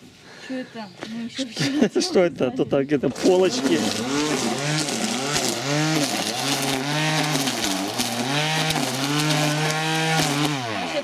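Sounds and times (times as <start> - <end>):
grass trimmer engine revving: 3.1 - 11.0.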